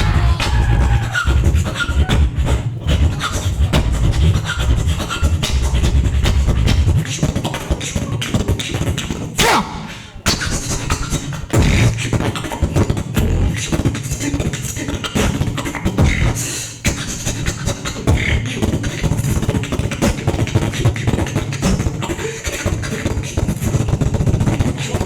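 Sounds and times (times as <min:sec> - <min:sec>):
person beatboxing: 0:00.0 - 0:25.0.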